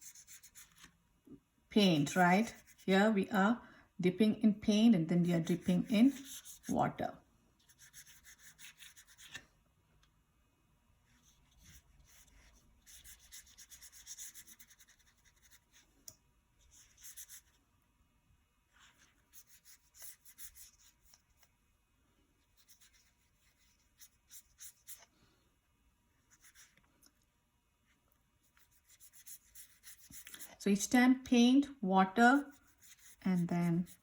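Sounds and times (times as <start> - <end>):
paintbrush strokes on paper: 0.0 - 1.0, 1.8 - 3.2, 5.1 - 7.0, 7.6 - 9.4, 11.0 - 15.9, 16.6 - 17.6, 18.6 - 21.6, 22.4 - 25.1, 26.2 - 26.8, 27.8 - 31.3, 32.0 - 34.0.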